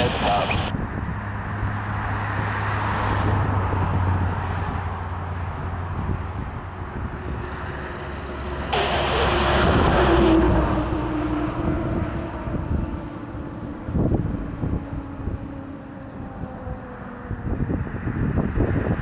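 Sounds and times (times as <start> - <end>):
radio hiss from scanner speaker: 0.0 - 0.7, 8.8 - 10.4
heavy engine running: 0.0 - 0.8, 4.6 - 16.8.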